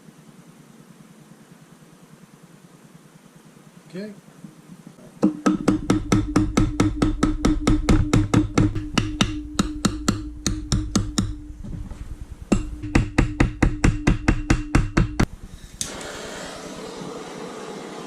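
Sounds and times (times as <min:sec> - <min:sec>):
rapid tapping strikes: 0:05.2 - 0:16.0.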